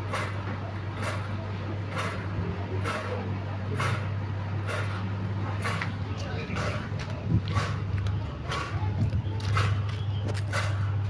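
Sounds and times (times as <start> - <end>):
turbine fan humming: 0.0 - 11.0.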